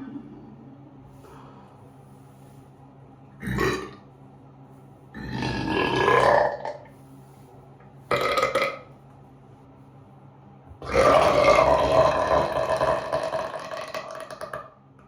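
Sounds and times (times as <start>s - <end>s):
person burping: 3.4s - 4.0s, 5.2s - 6.9s, 8.1s - 8.9s, 10.8s - 14.8s.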